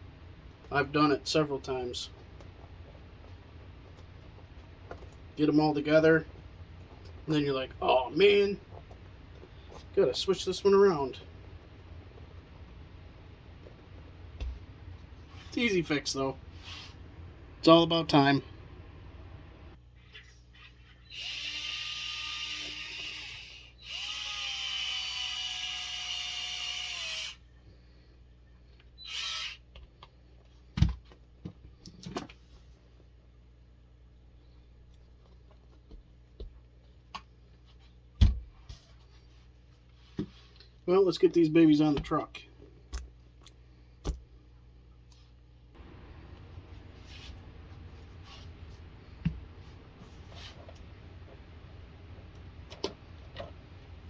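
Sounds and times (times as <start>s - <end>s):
low room hum: 0.0s - 54.0s
soft rubbing scrapes: 16.5s - 17.1s, 46.8s - 48.9s, 49.6s - 50.8s
electric screwdriver whining: 21.1s - 27.4s, 29.0s - 29.6s.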